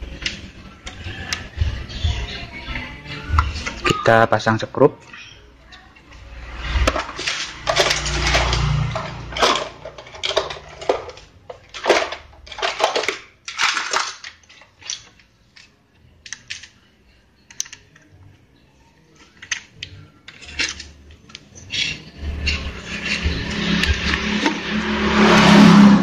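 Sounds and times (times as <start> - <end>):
small screws and tools clicking: 17.4 - 18.1.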